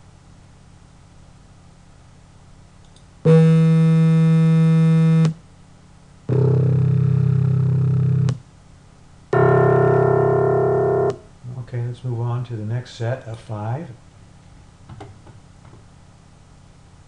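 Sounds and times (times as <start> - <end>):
low synthesized wavering tone: 6.3 - 8.3, 9.3 - 11.3
low piano note: 9.4 - 11.2.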